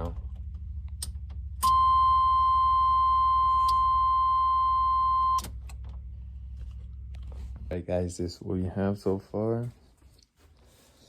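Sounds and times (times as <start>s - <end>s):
low steady hum: 0.0s - 10.2s
high electronic beep: 1.6s - 5.5s.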